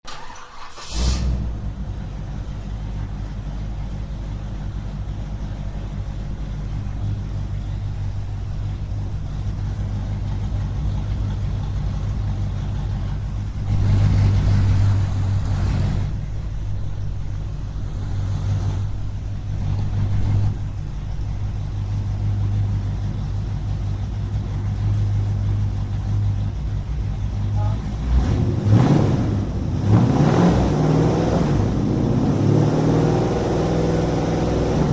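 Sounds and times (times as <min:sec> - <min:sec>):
car engine cranking and idling: 0:00.0 - 0:34.9.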